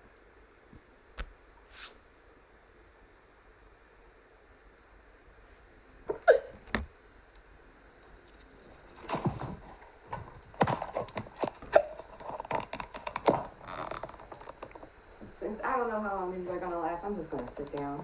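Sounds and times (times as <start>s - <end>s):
woman hiccupping: 6.1s - 6.6s.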